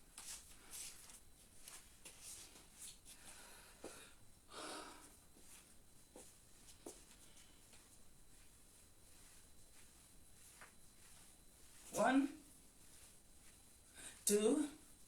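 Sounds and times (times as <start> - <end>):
faint breaths: 3.1 - 5.7, 13.8 - 14.3
rustling: 5.4 - 14.2.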